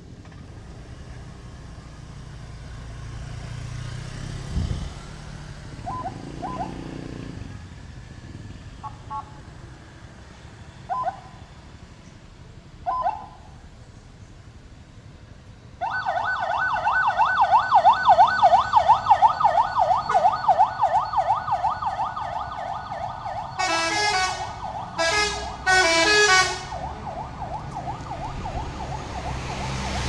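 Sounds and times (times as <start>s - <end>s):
coach engine rumble passing: 17.1s - 30.0s.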